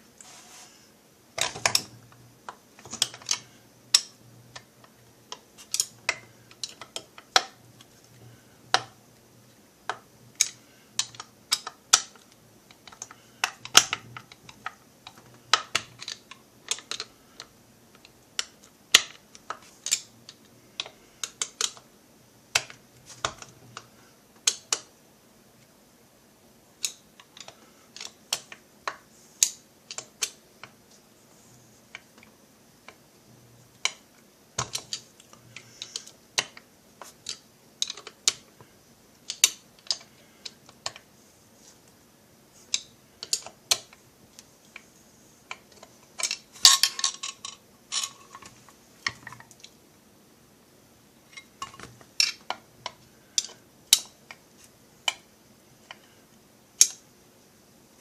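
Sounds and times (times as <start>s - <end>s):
metal tools clicking and tapping: 45.7s - 49.6s.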